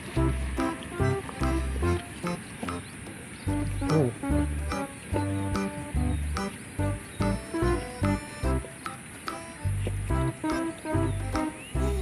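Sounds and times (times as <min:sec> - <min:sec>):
sharp percussion hits: 0:00.0 - 0:10.7
music with punchy bass beat: 0:03.5 - 0:08.7, 0:09.6 - 0:12.0.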